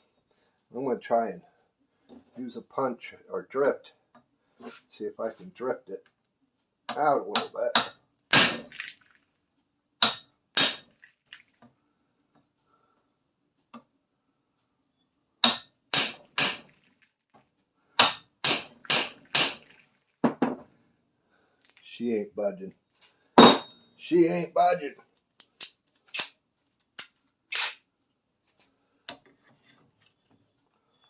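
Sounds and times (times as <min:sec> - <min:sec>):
hammer striking metal: 0:10.0 - 0:10.9, 0:15.4 - 0:16.7, 0:18.0 - 0:19.7, 0:23.4 - 0:23.8.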